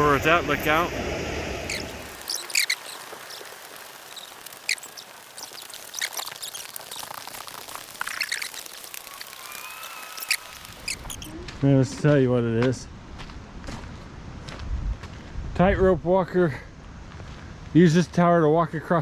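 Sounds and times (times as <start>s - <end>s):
steady hiss of air or water: 0.0s - 11.3s
small birds chirping: 1.6s - 11.4s.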